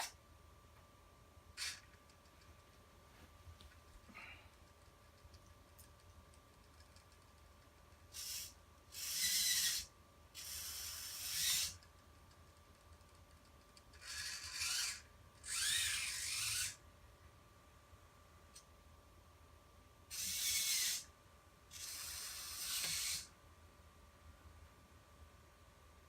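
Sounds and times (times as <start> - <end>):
servo motors whirring: 8.1 - 11.8, 14.0 - 16.8, 20.1 - 21.1, 21.7 - 23.3.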